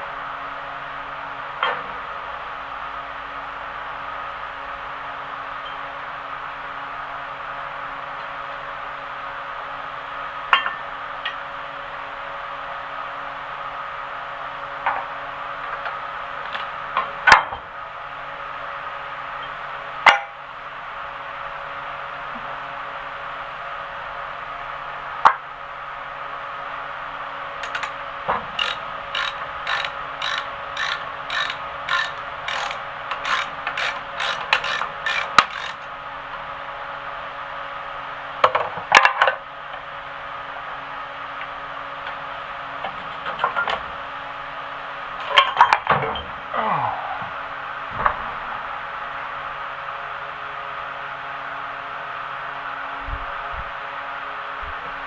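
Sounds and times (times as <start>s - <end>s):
fan humming: 15.4s - 45.8s
ratchet wrench clicking: 27.6s - 35.9s.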